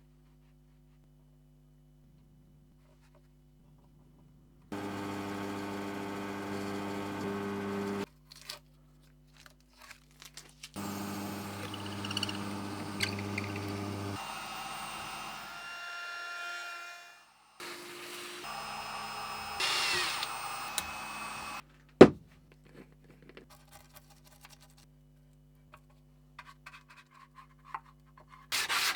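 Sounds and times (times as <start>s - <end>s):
power tool motor running: 4.7s - 8.1s, 10.8s - 21.6s
clicks and handling noise: 9.3s - 14.2s.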